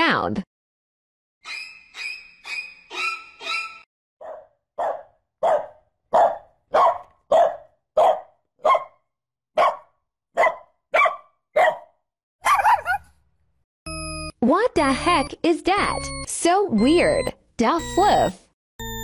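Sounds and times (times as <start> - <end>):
dog bark-whine: 3.0 - 9.0, 9.6 - 13.2
dog barking: 4.2 - 13.2.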